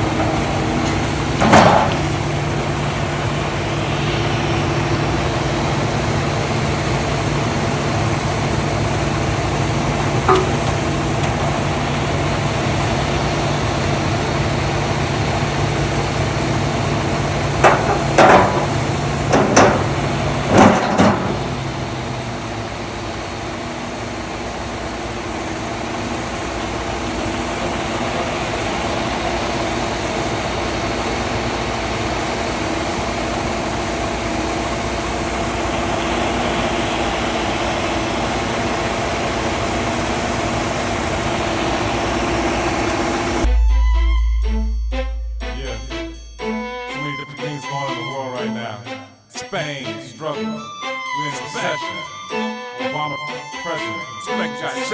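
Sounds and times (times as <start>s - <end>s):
truck engine running: 0.0s - 48.6s
loud short knocks: 1.4s - 2.2s.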